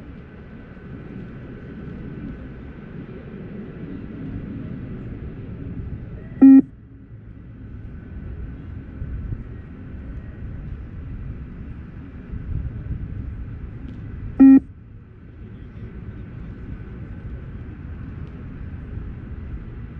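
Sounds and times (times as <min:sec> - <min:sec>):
low rumbling background with hum: 0:00.0 - 0:19.9
short electronic beeps: 0:06.4 - 0:06.7, 0:14.4 - 0:14.6.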